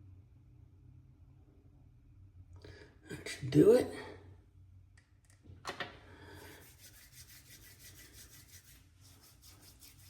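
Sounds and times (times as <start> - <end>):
rubbing over beard stubble: 6.6 - 10.0.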